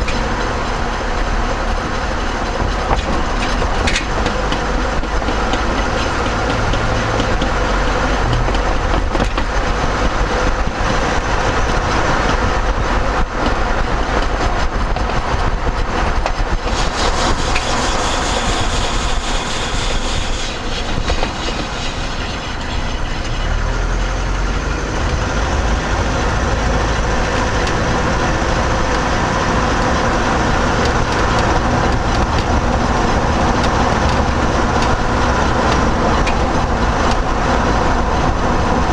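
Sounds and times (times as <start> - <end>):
road and tyre noise: 0.0 - 38.9
tyre knocking: 2.5 - 12.6.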